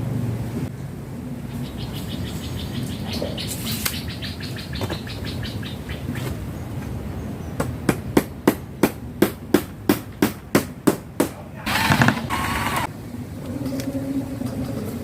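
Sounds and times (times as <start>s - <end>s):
bird trilling: 1.5s - 6.3s.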